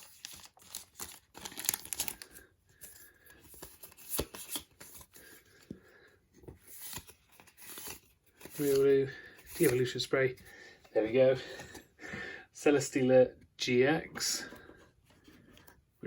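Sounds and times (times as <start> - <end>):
foil wrapper crinkling: 0.0 - 2.5
cards rustling: 0.0 - 11.9.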